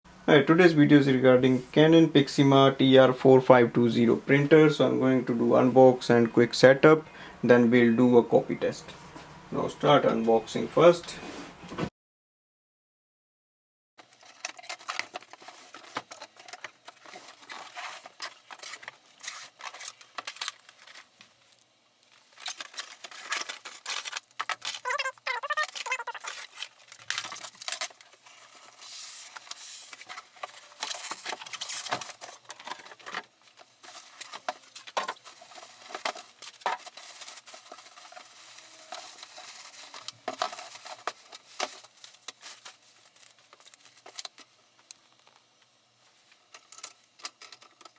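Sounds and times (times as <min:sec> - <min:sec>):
cardboard and plastic rustling: 0:14.0 - 0:47.9.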